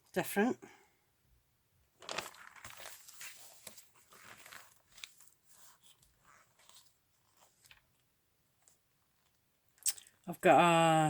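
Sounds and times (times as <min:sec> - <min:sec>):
magazine pages rustling: 0:02.0 - 0:08.0.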